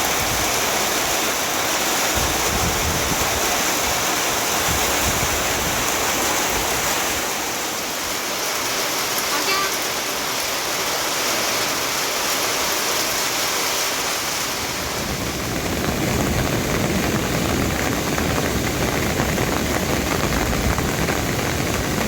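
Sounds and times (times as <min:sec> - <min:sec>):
rain hissing: 0:00.0 - 0:22.0
deep rushing: 0:14.2 - 0:22.0.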